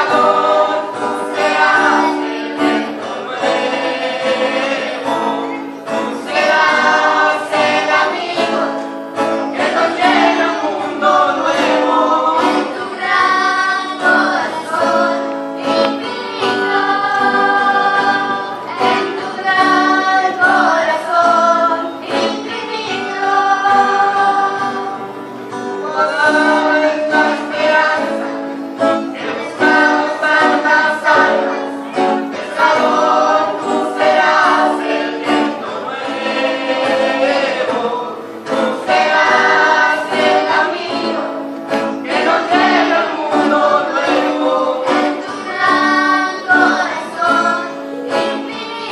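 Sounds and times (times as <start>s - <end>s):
choir singing a hymn: 0.0s - 48.9s.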